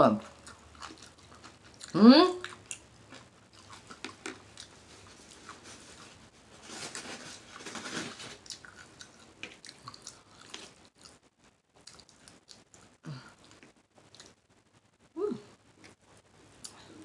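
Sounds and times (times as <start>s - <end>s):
person chewing with wet smacking: 0.2s - 6.2s, 8.4s - 14.4s.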